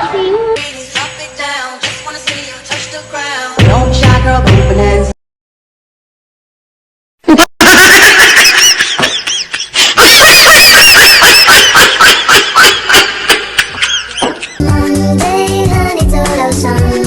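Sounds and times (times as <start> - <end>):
high-pitched squeaky laughing: 7.3 - 14.6.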